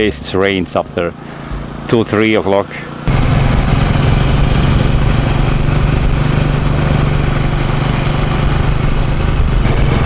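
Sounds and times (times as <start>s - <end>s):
road and wind noise: 0.0s - 10.0s
vehicle engine hum: 0.0s - 10.0s.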